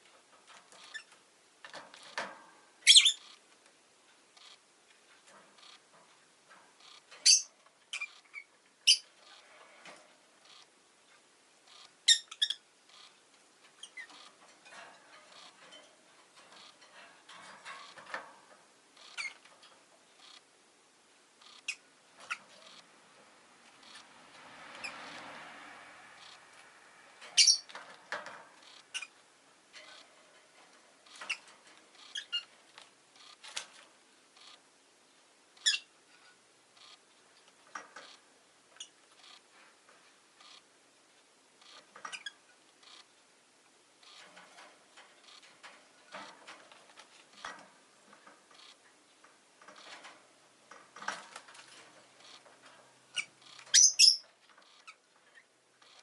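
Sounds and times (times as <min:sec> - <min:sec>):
lovebird chirping: 0:02.8 - 0:03.4, 0:06.8 - 0:09.4, 0:11.7 - 0:13.1, 0:21.4 - 0:22.8, 0:27.3 - 0:27.7, 0:32.0 - 0:32.5, 0:35.6 - 0:35.9, 0:53.1 - 0:56.0
passing vehicle: 0:22.8 - 0:27.4.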